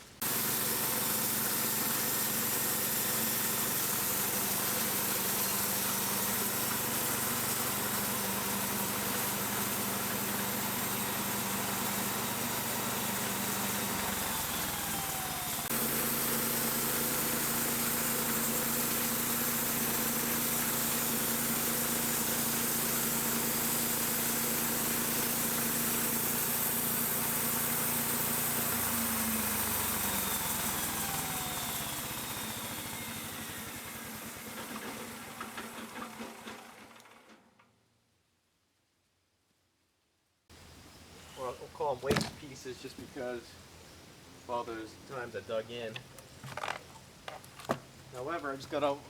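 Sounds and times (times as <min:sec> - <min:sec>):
sawmill engine running: 0:00.0 - 0:37.3, 0:44.5 - 0:49.0
band blade sawing wood: 0:00.2 - 0:33.9.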